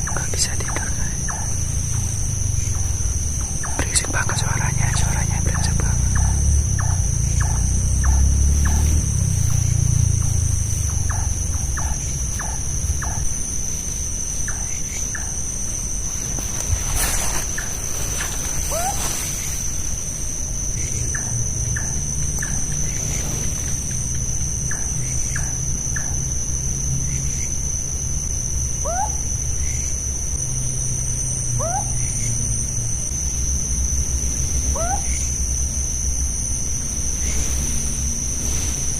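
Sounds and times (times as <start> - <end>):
high-pitched insect drone: 0.0 - 38.9.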